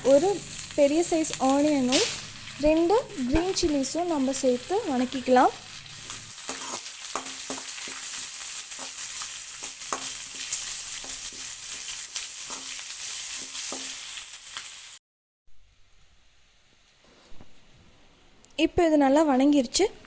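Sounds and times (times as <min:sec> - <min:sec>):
vegetables sizzling in hot oil: 0:00.0 - 0:15.0
spatula knocking a pan: 0:06.5 - 0:09.0, 0:09.6 - 0:11.5.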